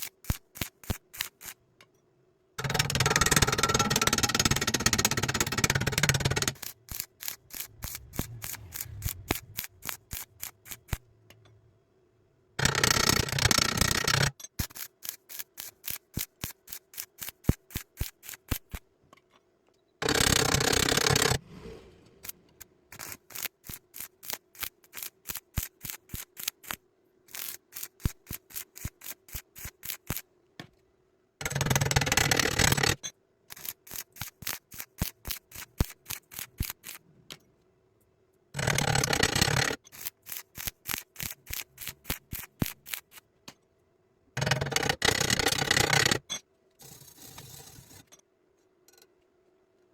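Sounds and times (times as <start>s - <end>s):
welding arc bursts: 6.6s - 11.0s, 40.0s - 43.1s.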